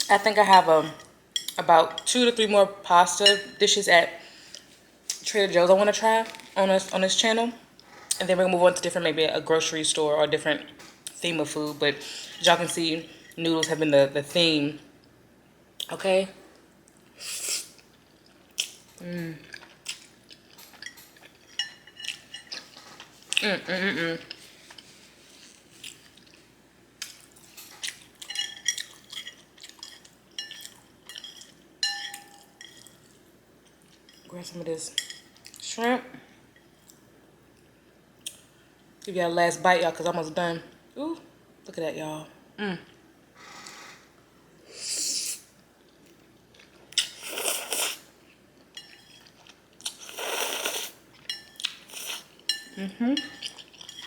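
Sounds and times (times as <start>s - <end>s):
utensils clinking against dish: 20.6s - 23.1s, 27.4s - 33.0s.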